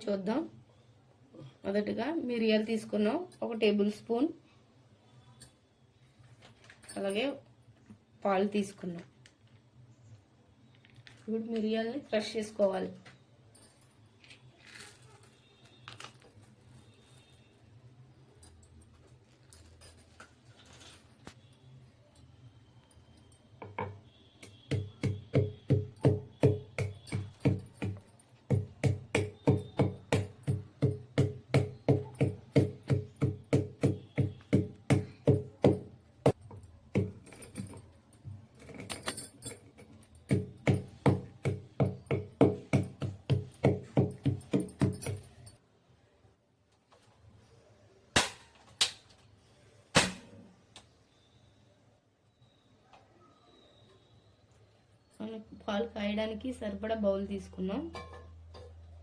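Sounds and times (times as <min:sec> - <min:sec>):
pestle pounding peppercorns: 0:23.6 - 0:37.3, 0:40.2 - 0:45.4.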